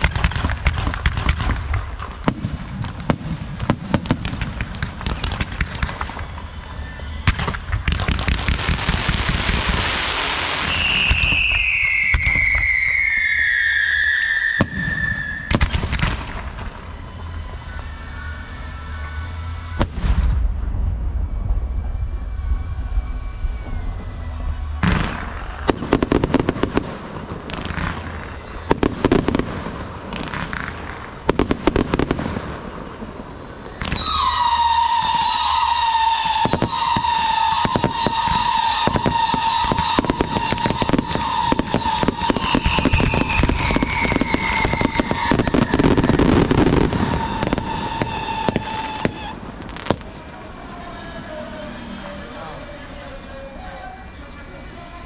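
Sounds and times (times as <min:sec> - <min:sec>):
fireworks bangs: 0:00.0 - 0:54.7
fireworks crackling: 0:00.0 - 0:55.0
long high tone falling in pitch: 0:10.6 - 0:15.5, 0:16.8 - 0:25.3, 0:34.0 - 0:55.0.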